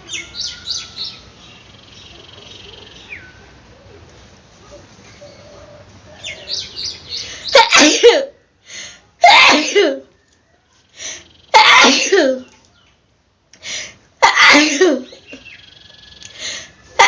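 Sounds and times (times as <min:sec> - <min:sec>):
quick catching breaths: 0:07.2 - 0:07.6, 0:08.6 - 0:09.1, 0:10.8 - 0:11.3, 0:13.6 - 0:14.1, 0:16.3 - 0:16.9
woman sneezing: 0:14.2 - 0:15.1.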